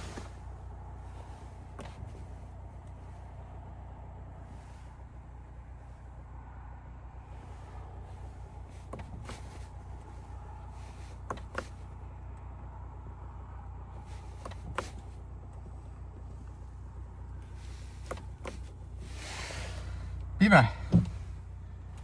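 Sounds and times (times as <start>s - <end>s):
low hum: 0.0s - 22.0s.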